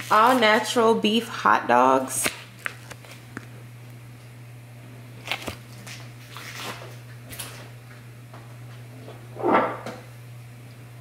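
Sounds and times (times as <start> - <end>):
grocery packages rustling: 0.0 - 1.2, 2.1 - 3.6, 5.1 - 7.7
steady low hum: 0.0 - 11.0.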